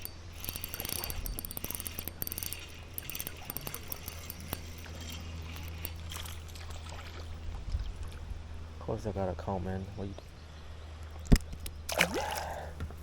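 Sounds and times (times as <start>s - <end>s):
fishing reel clicking: 0.0s - 6.8s.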